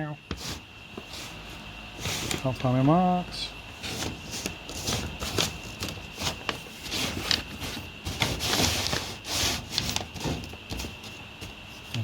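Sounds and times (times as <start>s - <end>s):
faint high whine: 0.0s - 8.2s.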